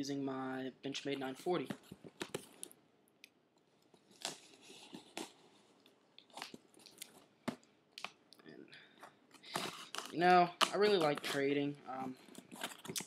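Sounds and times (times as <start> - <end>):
cardboard and tape rustling: 9.0 - 13.0.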